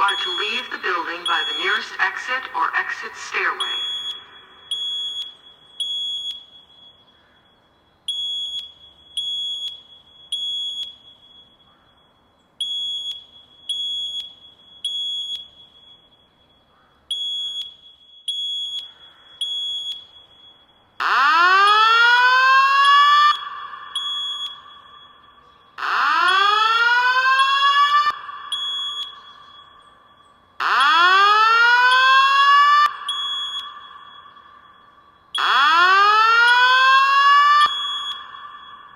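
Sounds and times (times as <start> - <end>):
fire alarm beeps: 0.0 - 38.9
rising whoop alarm tone: 21.0 - 25.2, 25.8 - 29.4, 30.6 - 34.8, 35.4 - 38.9.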